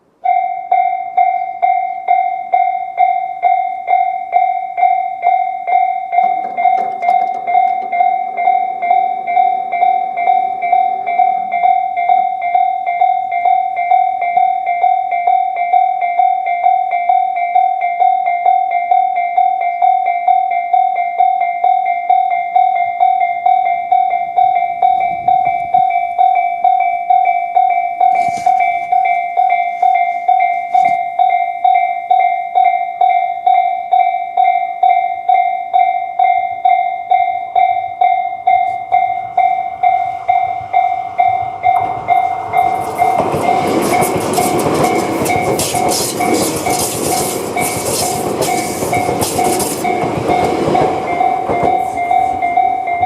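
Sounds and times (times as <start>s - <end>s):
level crossing alarm dinging: 0.0s - 53.0s
train passing: 4.8s - 13.5s, 37.0s - 53.0s.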